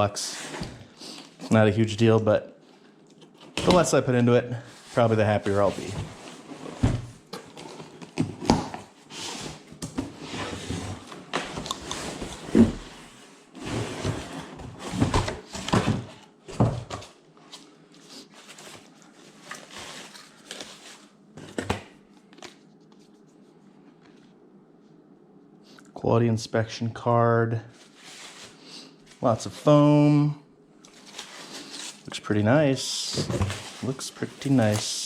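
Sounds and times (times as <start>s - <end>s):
rummaging through box and foam: 18.2s - 21.1s, 33.0s - 35.0s.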